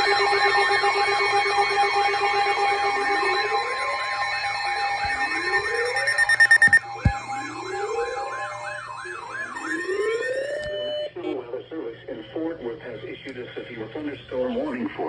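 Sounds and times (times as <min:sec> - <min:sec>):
fast siren warble: 0:00.0 - 0:11.2
siren wail rising: 0:00.0 - 0:11.2
steady alert tones: 0:02.9 - 0:11.1.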